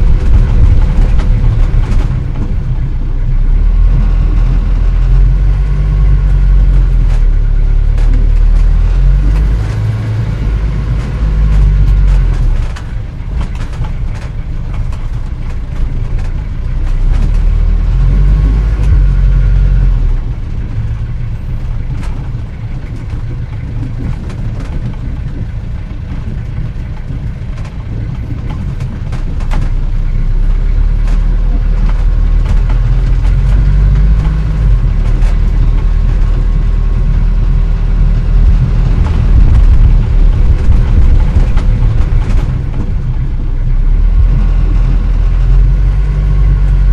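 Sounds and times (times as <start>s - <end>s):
old car engine running: 0.0s - 46.9s.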